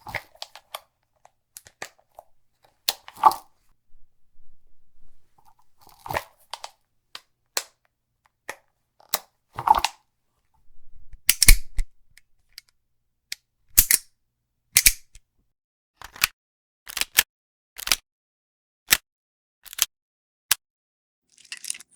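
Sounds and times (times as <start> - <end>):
gun reloading clicks: 11.2 - 11.9, 13.8 - 14.0, 14.8 - 15.2.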